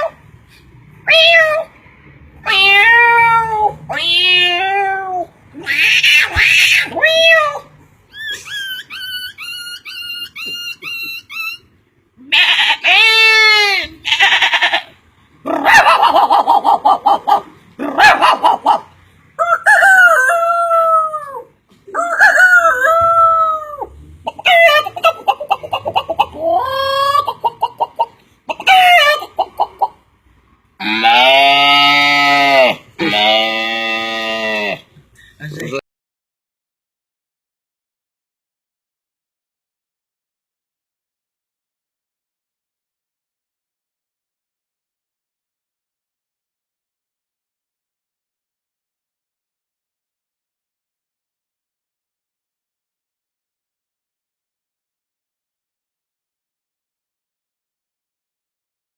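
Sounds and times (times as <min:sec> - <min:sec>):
high bird-like calls: 0:08.1 - 0:11.7
man imitating animal calls: 0:12.2 - 0:29.9, 0:30.8 - 0:35.0
man crowing like a rooster: 0:22.0 - 0:23.9.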